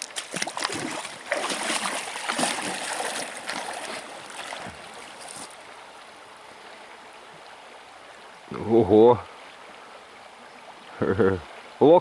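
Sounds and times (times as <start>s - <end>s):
water splashing around wading person: 0.0s - 5.8s
stream running: 0.0s - 12.0s.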